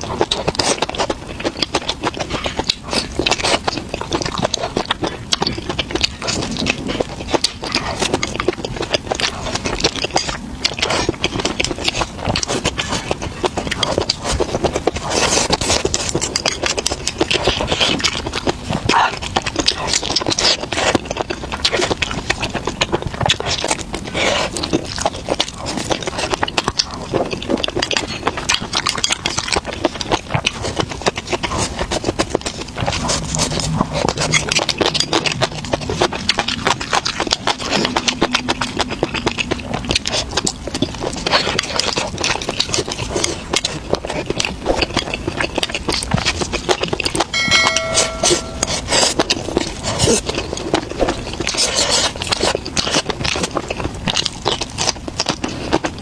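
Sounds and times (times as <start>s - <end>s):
crunchy chewing: 0.0s - 56.0s.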